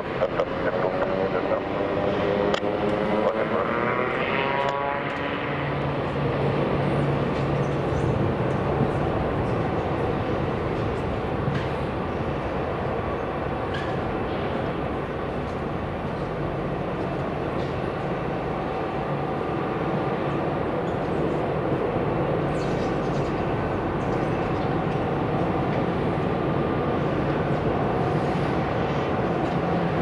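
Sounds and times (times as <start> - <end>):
turboprop engines running: 0.0 - 30.0.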